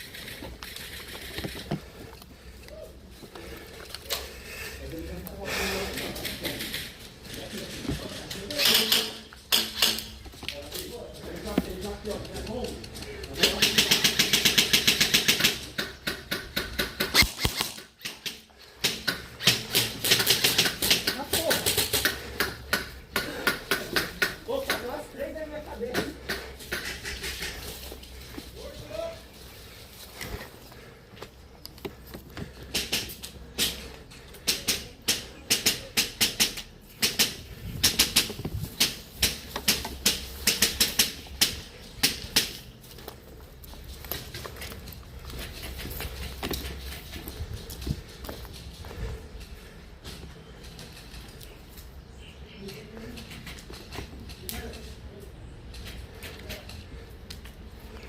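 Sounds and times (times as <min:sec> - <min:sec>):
airsoft guns firing: 0:08.6 - 0:10.2, 0:13.4 - 0:24.3, 0:34.4 - 0:42.6.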